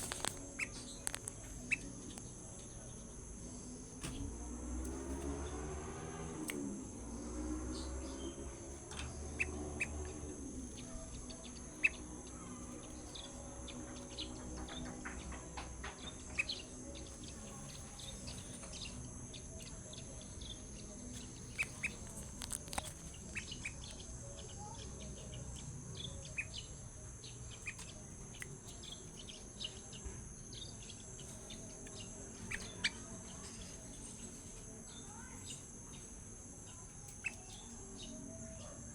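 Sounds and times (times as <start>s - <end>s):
bulbul chirping: 21.0s - 24.1s, 37.1s - 37.7s.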